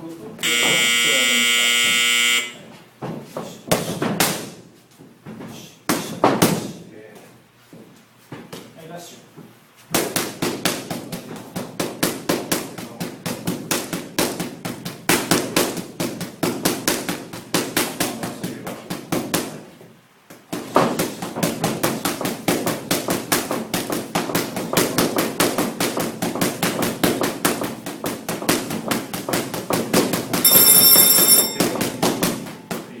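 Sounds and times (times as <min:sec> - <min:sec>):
steady high tone: 0:00.4 - 0:02.7, 0:30.4 - 0:31.9.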